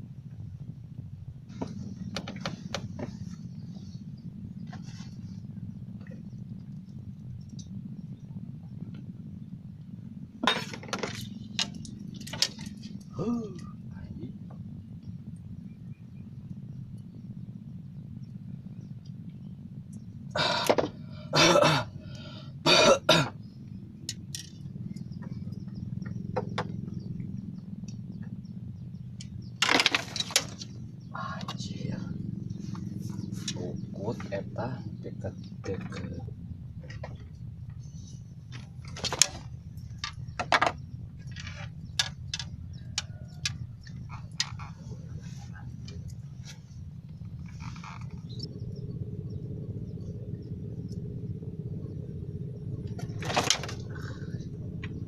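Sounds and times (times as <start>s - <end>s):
steady low hum: 0.0s - 55.0s
person coughing: 21.4s - 21.9s, 22.7s - 23.4s.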